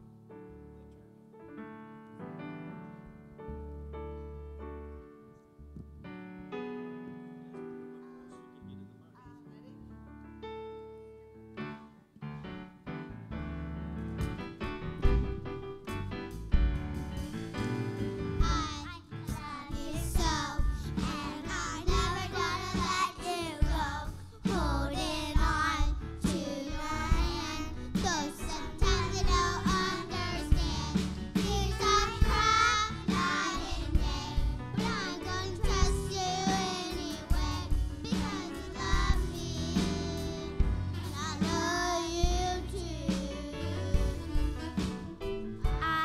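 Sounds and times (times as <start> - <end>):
instrumental accompaniment with beat: 13.9 - 46.0
children's choir singing: 19.5 - 44.4.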